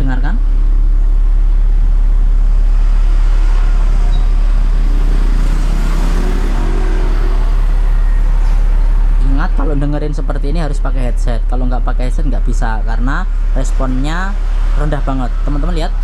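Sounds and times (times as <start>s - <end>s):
subwoofer low test tone: 0.0s - 16.0s.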